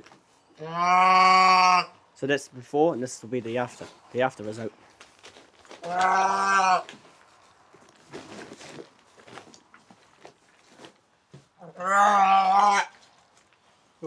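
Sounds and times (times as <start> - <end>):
calf mooing: 0.6 - 2.0, 11.6 - 13.0
faint shuffling: 2.1 - 6.2, 6.8 - 11.6.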